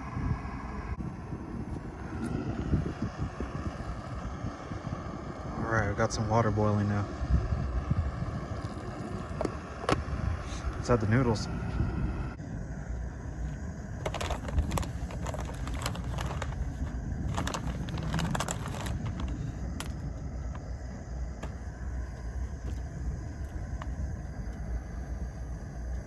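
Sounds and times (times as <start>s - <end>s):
low rumble: 0.0s - 26.0s
packaging crinkling and rattling: 14.0s - 20.8s, 21.4s - 21.7s.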